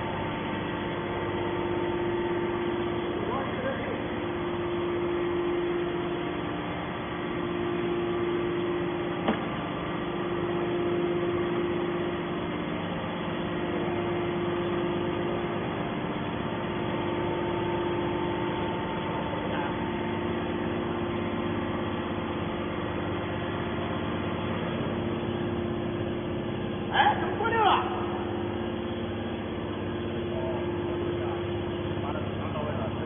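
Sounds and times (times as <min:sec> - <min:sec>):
hydraulic power unit humming: 0:00.0 - 0:33.0.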